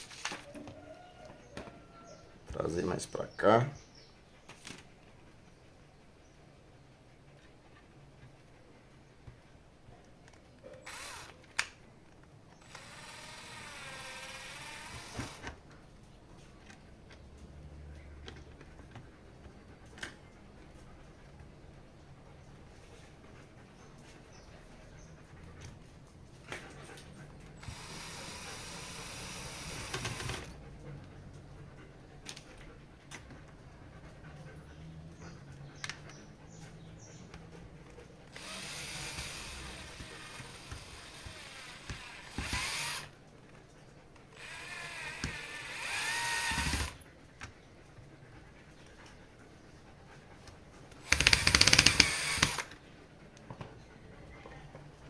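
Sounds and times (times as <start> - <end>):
drill-driver running screws: 10.8 - 11.4, 12.6 - 15.6, 27.6 - 30.5, 38.3 - 43.1, 44.4 - 47.0, 51.0 - 52.8.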